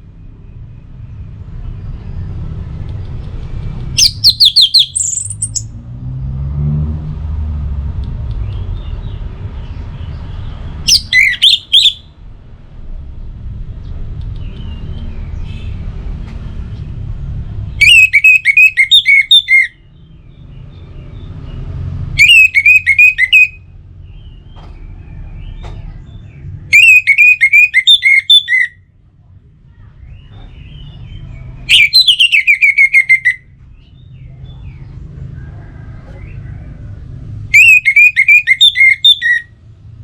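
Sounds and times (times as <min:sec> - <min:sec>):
thrush singing: 0:04.0 - 0:05.7, 0:10.9 - 0:12.0, 0:17.8 - 0:19.7, 0:22.2 - 0:23.6, 0:26.8 - 0:28.7, 0:31.7 - 0:33.4, 0:37.5 - 0:39.4.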